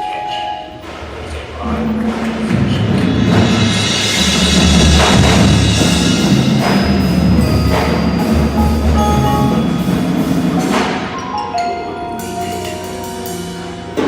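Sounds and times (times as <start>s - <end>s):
marching band low chords: 2.1s - 11.2s
cymbal crash strikes: 3.1s - 11.1s
mallet percussion and chimes: 5.1s - 14.0s.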